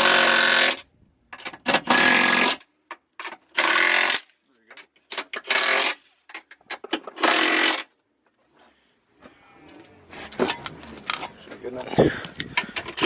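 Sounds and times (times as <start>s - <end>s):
tools clanking against metal: 10.2s - 13.0s.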